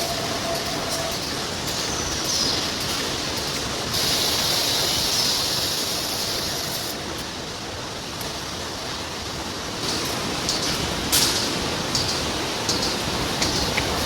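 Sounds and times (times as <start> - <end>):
machinery noise: 0.0 - 7.4
air hiss: 3.9 - 7.2.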